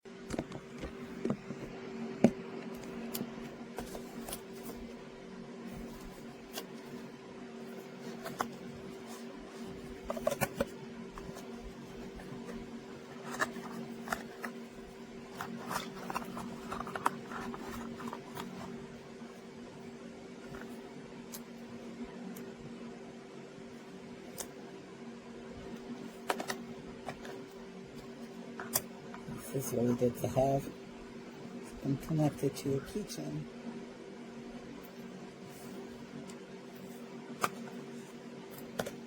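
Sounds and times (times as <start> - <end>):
steady low hum: 0.0 - 39.0
packaging being handled: 7.8 - 18.8.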